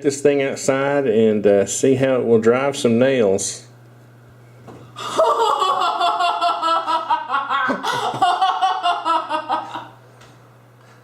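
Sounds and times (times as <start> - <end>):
steady low hum: 0.0 - 11.0
high-pitched laughter: 5.0 - 9.9.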